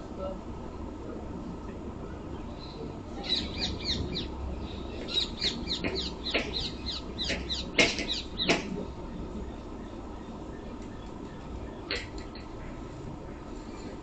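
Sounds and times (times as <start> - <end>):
bird chirping: 2.4 - 8.6.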